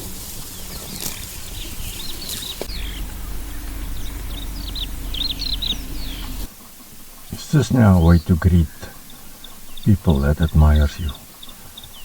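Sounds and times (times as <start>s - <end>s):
engine idling hum: 0.0s - 6.7s
small birds chirping: 0.0s - 12.0s.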